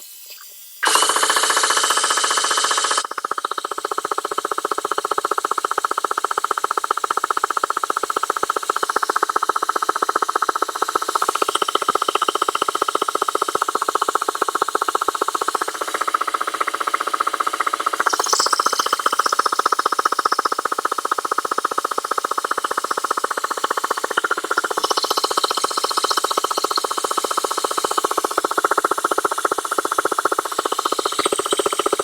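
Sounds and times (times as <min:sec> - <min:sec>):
small electric motor running: 0:00.0 - 0:05.1.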